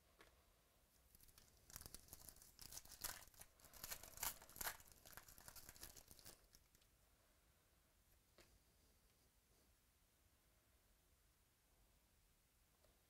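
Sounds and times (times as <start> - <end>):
wrapper being torn and crinkled: 1.1 - 6.8.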